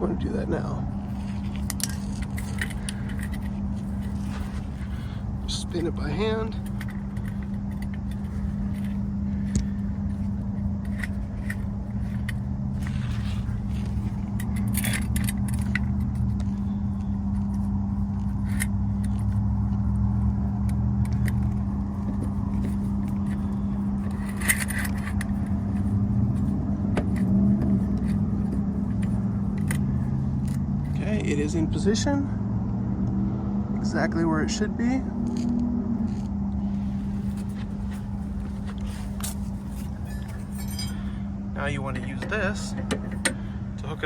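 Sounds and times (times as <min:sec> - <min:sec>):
steady low hum: 0:00.0 - 0:44.0
metallic clicks and scrapes of jack: 0:01.0 - 0:31.0.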